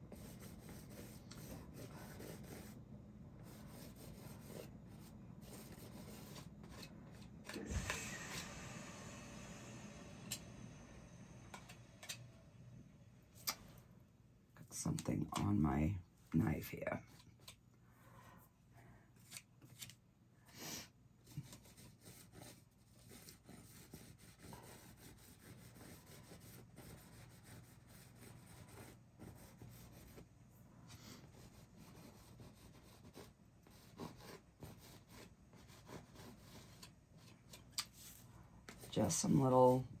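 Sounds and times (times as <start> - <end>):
palette knife scraping paint: 21.3 - 30.2.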